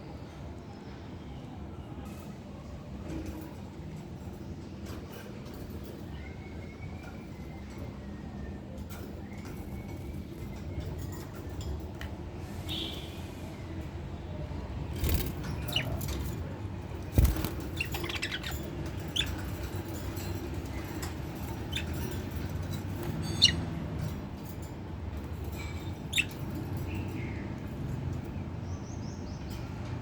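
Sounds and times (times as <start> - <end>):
lovebirds chirping: 14.9 - 23.8, 25.5 - 27.6.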